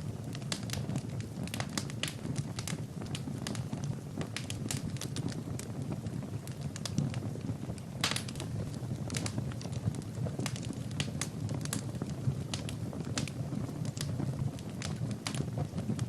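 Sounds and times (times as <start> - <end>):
low rumble of flames: 0.0 - 16.0
wood fire crackling: 0.0 - 16.0
sharp pops of burning wood: 0.4 - 3.7, 8.0 - 9.8.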